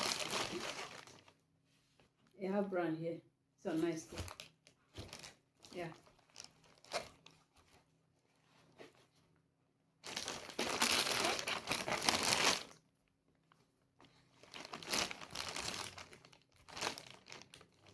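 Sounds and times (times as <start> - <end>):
packaging crinkling: 0.0 - 1.4, 4.3 - 7.8, 10.0 - 12.8, 14.4 - 17.9.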